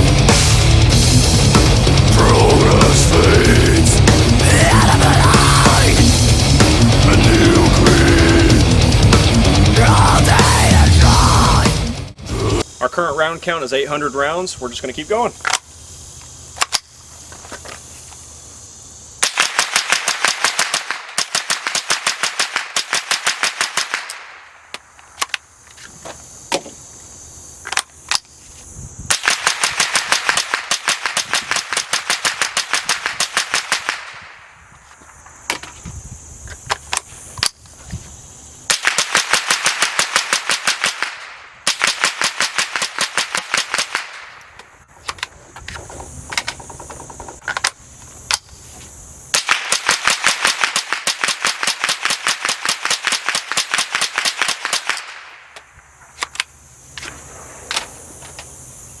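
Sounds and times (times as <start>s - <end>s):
suppressed rifle rapid shots: 19.2s - 24.4s, 29.1s - 34.4s, 38.7s - 44.4s.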